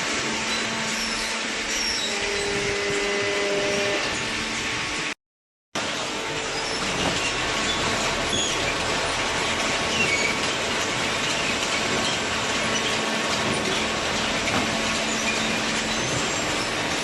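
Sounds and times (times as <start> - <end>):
baler machine running: 5.8 - 17.0.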